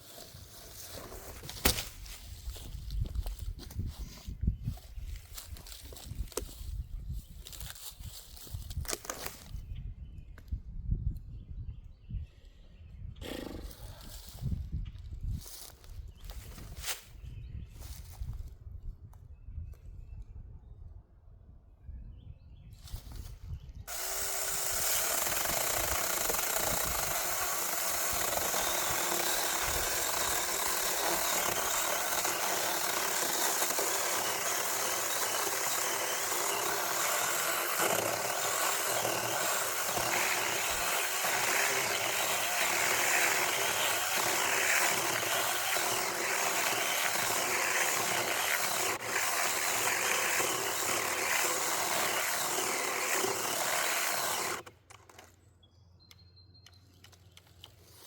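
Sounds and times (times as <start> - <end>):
mini chainsaw cutting wood: 0.0 - 2.6, 23.9 - 55.3.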